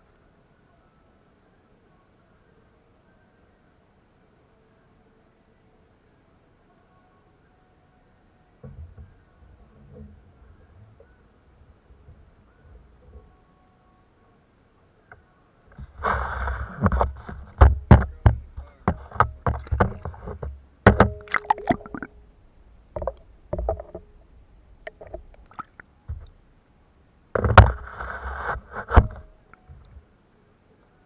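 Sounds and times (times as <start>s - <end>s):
knocks and clatter on a kayak: 8.6s - 10.2s, 15.7s - 22.1s, 22.9s - 26.4s, 27.3s - 30.0s.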